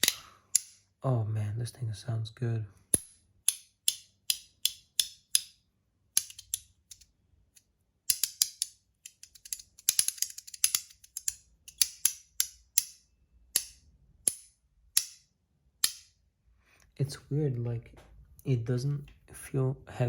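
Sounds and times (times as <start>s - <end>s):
magnetic fidget parts snapping: 6.2s - 7.1s, 8.1s - 15.2s.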